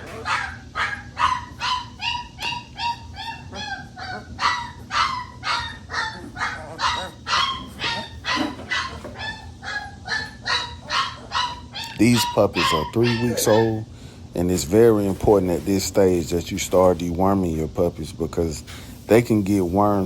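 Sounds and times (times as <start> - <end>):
puppy yelping: 0.0 - 13.8.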